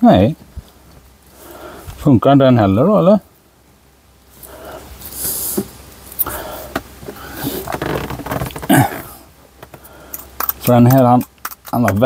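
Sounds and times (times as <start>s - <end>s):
rustling: 4.2s - 12.0s.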